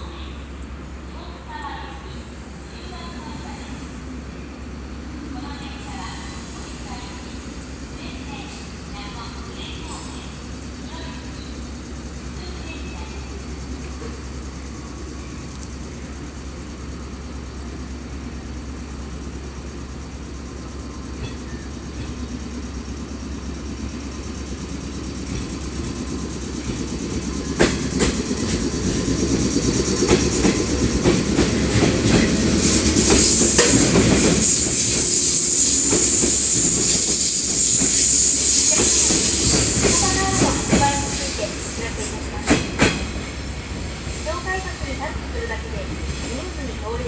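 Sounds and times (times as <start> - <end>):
electric train pulling out: 13.3 - 45.5
wheels clacking over rail joints: 26.6 - 43.4
bright hiss: 32.2 - 42.6
thin high steady tone: 32.7 - 42.5.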